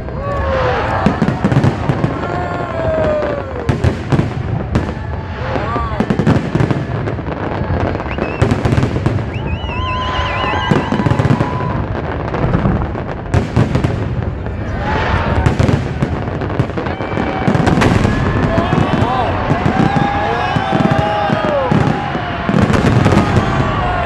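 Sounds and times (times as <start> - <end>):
firework bangs and crackles: 0.0 - 24.0
warbling firework whistle: 7.9 - 11.8, 16.8 - 24.0
voices: 14.4 - 24.0.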